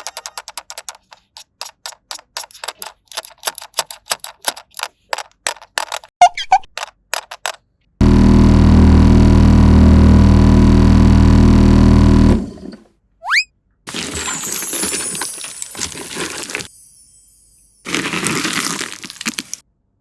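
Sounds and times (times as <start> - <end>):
loud steady low hum: 8.0 - 12.4
short rising whistle: 13.2 - 13.5.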